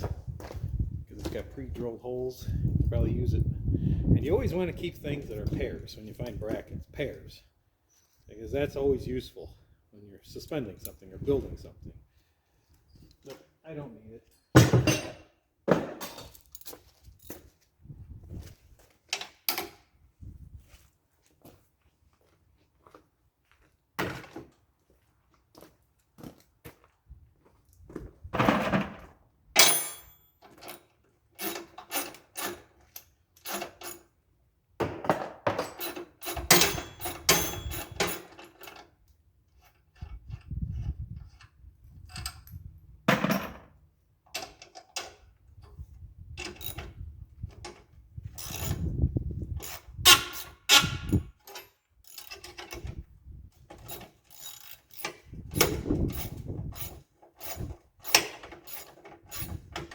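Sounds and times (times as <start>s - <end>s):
hand tools clanking on metal: 14.4s - 15.3s, 29.6s - 34.1s, 35.5s - 38.9s, 46.4s - 46.9s, 48.4s - 48.9s, 49.6s - 53.0s, 53.6s - 59.9s.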